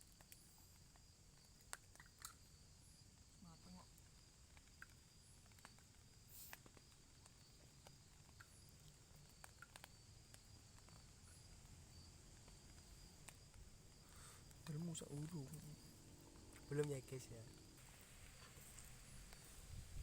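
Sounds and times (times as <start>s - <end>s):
light clicks and ticks: 4.5s - 11.6s.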